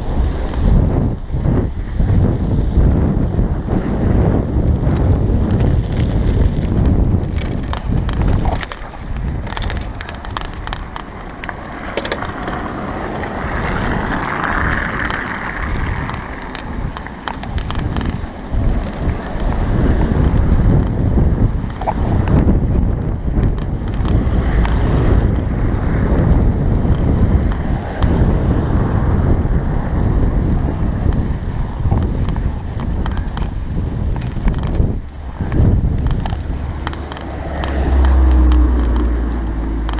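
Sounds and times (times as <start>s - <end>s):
wind buffeting microphone: 0.0s - 39.9s.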